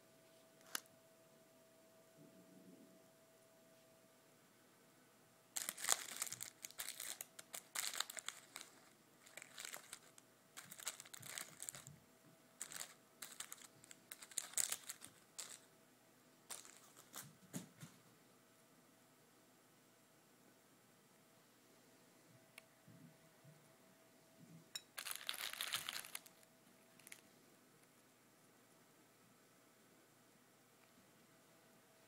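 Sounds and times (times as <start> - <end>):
candy wrapper crinkling: 0.6 - 0.9, 5.6 - 11.9, 12.6 - 15.7, 16.5 - 17.3, 24.8 - 27.2.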